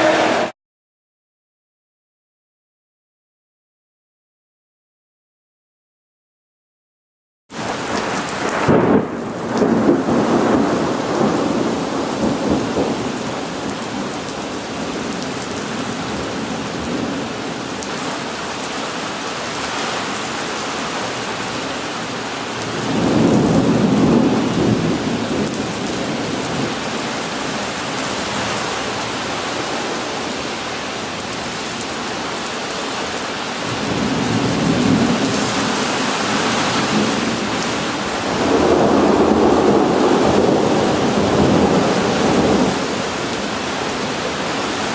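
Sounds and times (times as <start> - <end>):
heavy rain: 0.0 - 0.5, 7.5 - 44.9
rolling thunder: 8.0 - 13.8, 22.7 - 27.0, 33.7 - 43.1.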